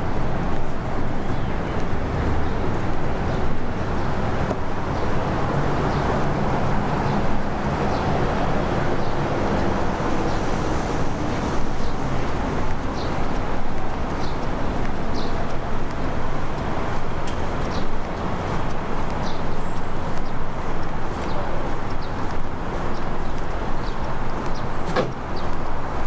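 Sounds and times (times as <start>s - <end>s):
vehicle engines rumbling: 0.0s - 26.0s.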